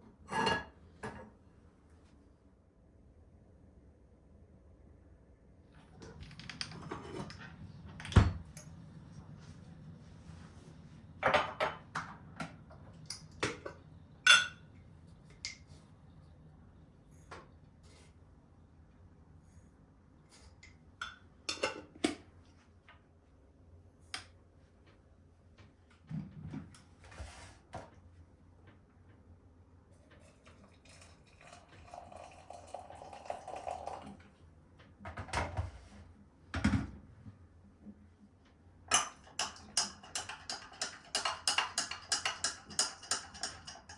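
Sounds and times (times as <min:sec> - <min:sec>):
dishes and utensils clinking: 0:11.2 - 0:14.7, 0:38.9 - 0:43.9.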